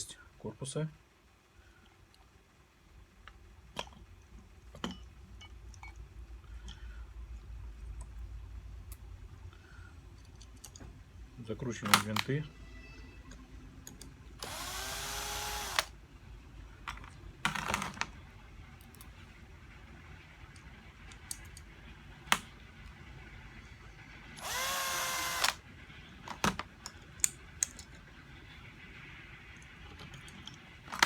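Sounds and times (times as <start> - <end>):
electric screwdriver whining: 14.4 - 15.9, 24.4 - 25.6.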